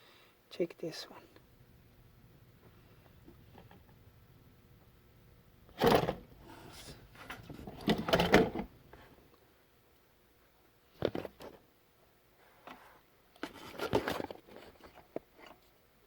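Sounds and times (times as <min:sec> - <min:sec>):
knocks and rattles of parts: 0:05.8 - 0:08.7.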